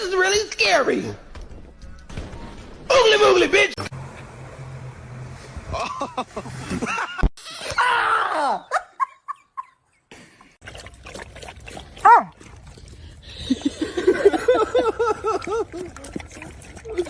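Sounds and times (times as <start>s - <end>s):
dog barking: 12.0s - 12.3s
dog yipping: 12.0s - 12.3s.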